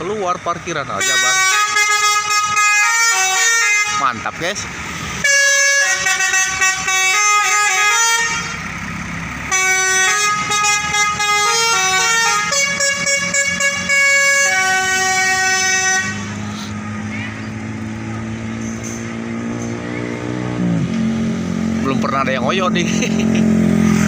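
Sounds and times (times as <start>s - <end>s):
multi-tone bus horn tune: 1.0s - 4.2s, 5.2s - 8.8s, 9.4s - 16.4s.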